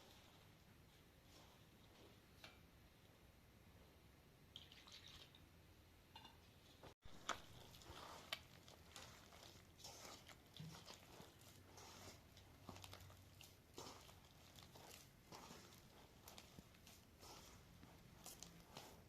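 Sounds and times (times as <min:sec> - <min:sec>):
soft rustles: 0:06.8 - 0:19.0.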